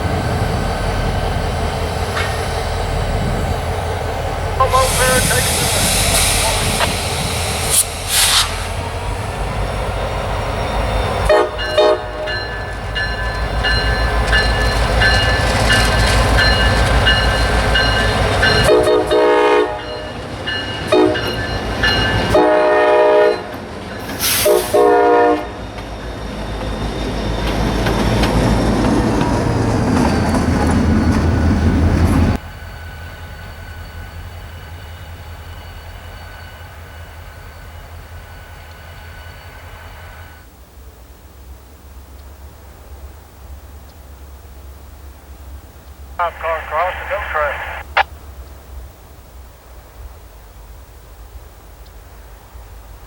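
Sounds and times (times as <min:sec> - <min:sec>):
diesel locomotive engine rumbling: 0:00.0 - 0:53.0
locomotive horn blasts: 0:04.6 - 0:05.6, 0:11.3 - 0:12.4, 0:18.6 - 0:20.0, 0:20.9 - 0:21.4, 0:22.3 - 0:23.5, 0:24.4 - 0:25.6.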